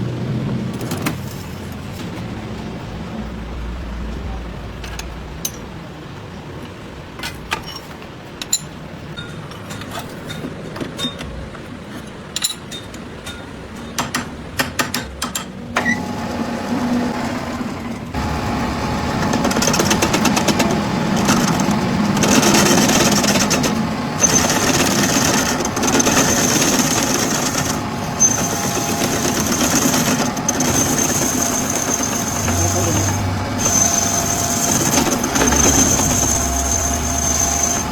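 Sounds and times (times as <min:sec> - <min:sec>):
machine running with high whine: 0:15.8 - 0:37.9.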